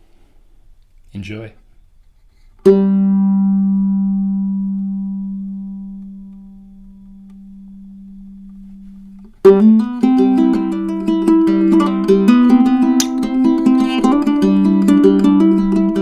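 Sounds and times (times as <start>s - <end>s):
ukulele notes: 9.4s - 16.0s.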